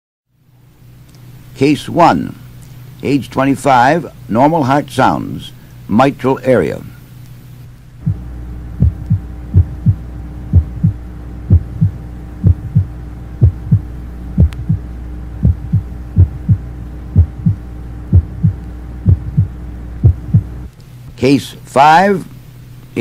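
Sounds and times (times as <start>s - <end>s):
low steady hum: 0.3s - 23.0s
heartbeat lub-dub: 8.0s - 20.7s.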